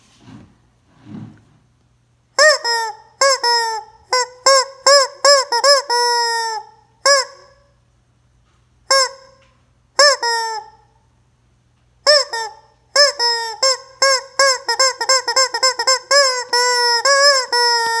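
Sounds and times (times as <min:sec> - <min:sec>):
rubber chicken toy squawking: 0:02.4 - 0:07.6, 0:08.9 - 0:09.4, 0:10.0 - 0:10.8, 0:12.1 - 0:18.0.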